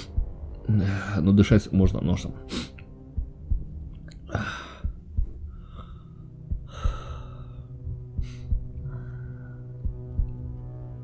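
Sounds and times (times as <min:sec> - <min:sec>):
soft low thumps: 0:00.0 - 0:00.8, 0:01.6 - 0:11.0
steady low hum: 0:00.0 - 0:11.0
man breathing through nose: 0:04.3 - 0:09.8.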